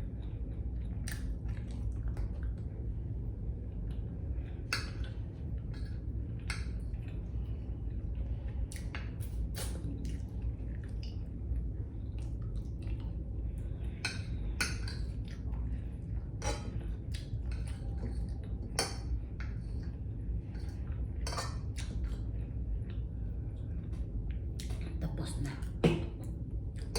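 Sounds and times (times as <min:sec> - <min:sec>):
steady low hum: 0:00.0 - 0:26.9
wet mouth chewing noises: 0:00.8 - 0:02.6, 0:08.7 - 0:11.2.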